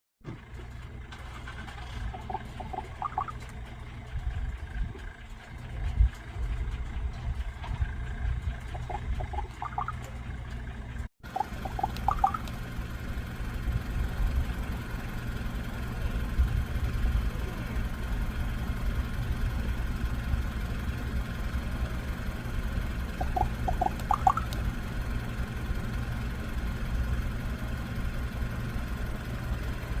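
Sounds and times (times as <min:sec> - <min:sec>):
low rumble: 0:01.3 - 0:15.1
raven begging calls: 0:11.4 - 0:12.5, 0:23.2 - 0:24.6.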